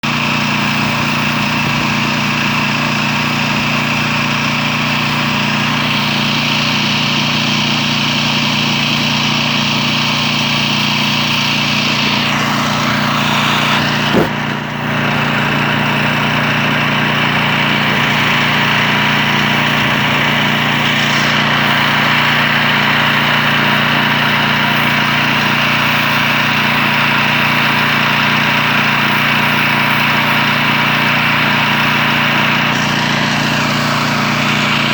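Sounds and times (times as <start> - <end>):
engine hum: 0.0 - 34.9
high-pressure water jet hissing: 0.1 - 34.9
sharp knock: 14.1 - 14.4.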